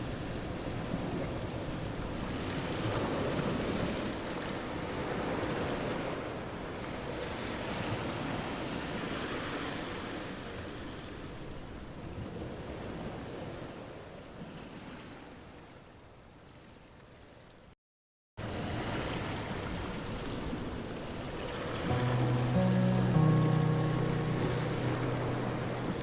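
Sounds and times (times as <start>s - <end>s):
ocean waves washing in: 21.8s - 26.0s.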